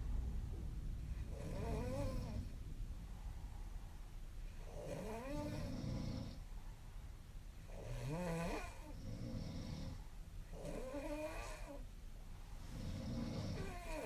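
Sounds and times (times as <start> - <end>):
woman snoring: 1.2 - 2.5, 4.6 - 6.4, 7.7 - 11.8, 12.7 - 14.0.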